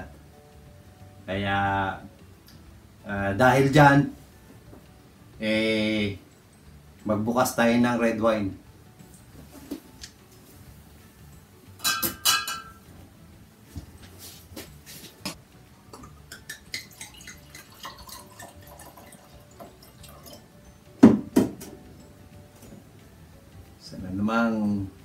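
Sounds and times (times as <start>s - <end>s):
bottle clinking against glass: 11.8s - 12.8s
wine pouring into glass: 16.0s - 20.5s
knocks: 21.0s - 21.8s.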